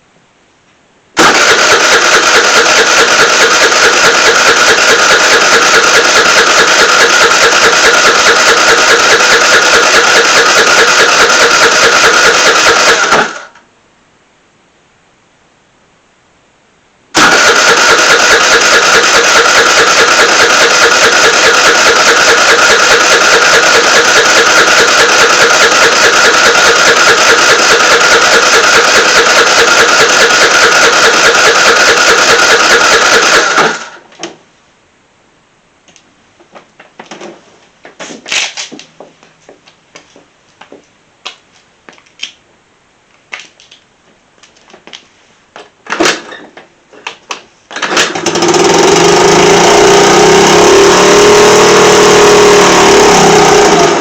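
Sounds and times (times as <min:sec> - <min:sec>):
scooter engine idling: 0:01.2 - 0:13.5, 0:17.2 - 0:34.0.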